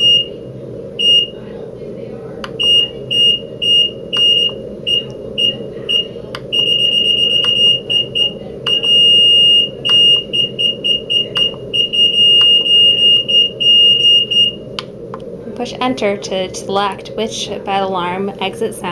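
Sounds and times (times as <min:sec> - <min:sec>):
high electronic alarm beeps: 0:00.0 - 0:00.4, 0:01.0 - 0:01.4, 0:02.6 - 0:14.7
long steady alarm tones: 0:00.0 - 0:18.9.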